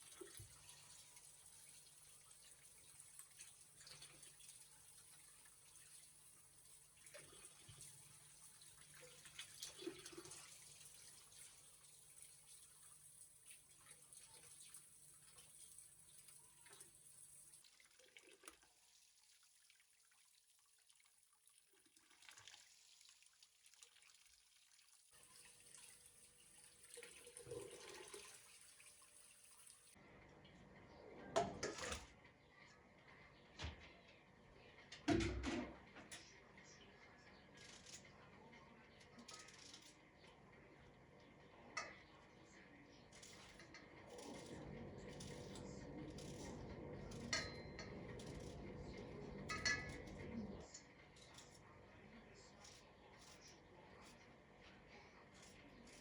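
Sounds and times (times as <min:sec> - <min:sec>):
water running at a sink: 0:00.0 - 0:30.0, 0:43.1 - 0:54.2.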